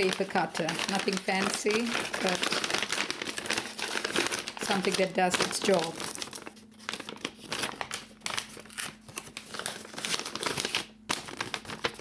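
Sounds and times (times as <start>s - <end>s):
paper bags rustling: 0.0s - 12.0s.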